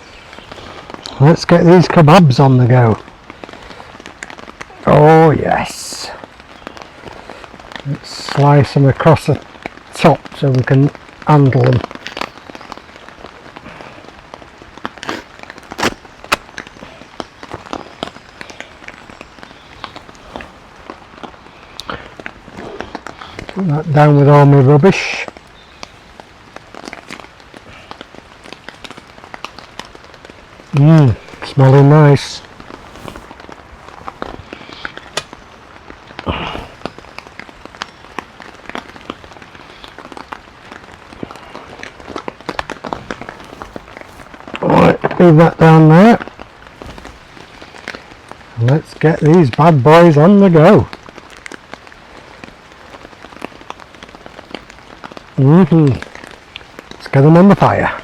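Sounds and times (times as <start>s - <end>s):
rain drops ticking: 0.0s - 58.0s
rain falling: 0.0s - 58.0s
loud rustle: 11.8s - 23.6s, 24.3s - 48.6s
plastic packaging crackling: 25.0s - 48.6s.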